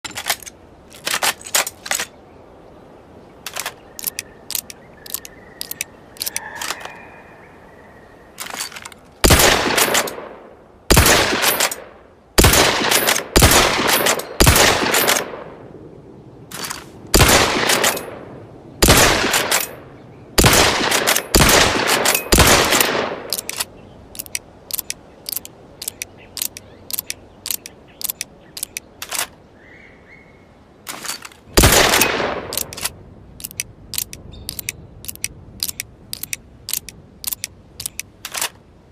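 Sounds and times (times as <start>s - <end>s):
sharp clicks: 3.4s - 7.0s, 21.9s - 29.4s, 30.9s - 38.6s
rifle shots echoing: 9.2s - 15.6s, 17.1s - 18.2s, 18.8s - 19.7s, 20.4s - 23.4s, 31.6s - 32.9s.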